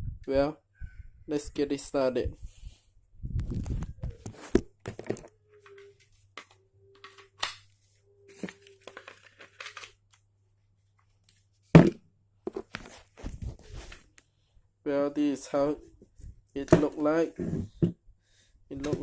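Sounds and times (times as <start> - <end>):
objects rustling and scraping: 2.4 - 10.0, 10.9 - 14.6, 15.7 - 18.0.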